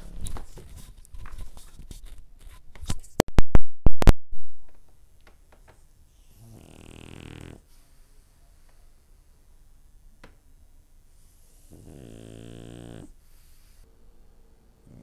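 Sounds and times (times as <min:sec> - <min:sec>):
dog snoring: 0:06.1 - 0:07.7, 0:11.3 - 0:13.6.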